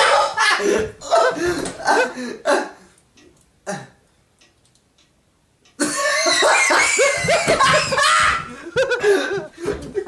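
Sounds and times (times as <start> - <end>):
loud laughter: 0.0 - 2.2, 5.8 - 10.0.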